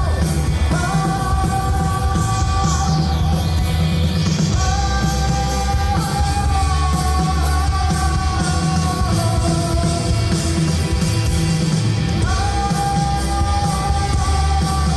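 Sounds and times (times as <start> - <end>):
live rock band: 0.0 - 14.9
person singing long notes: 4.5 - 10.7, 12.2 - 14.9.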